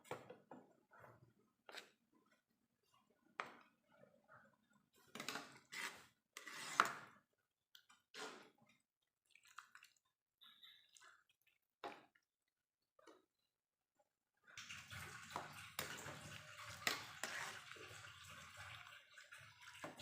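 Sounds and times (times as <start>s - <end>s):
water splashing: 14.6s - 20.0s.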